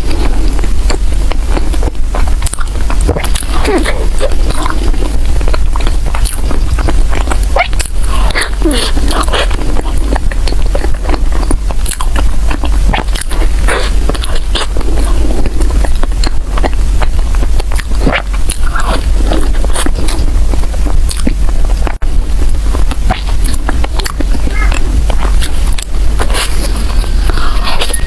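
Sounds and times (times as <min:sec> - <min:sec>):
chewing and biting bread: 0:00.0 - 0:28.0
steady low hum: 0:00.0 - 0:28.0.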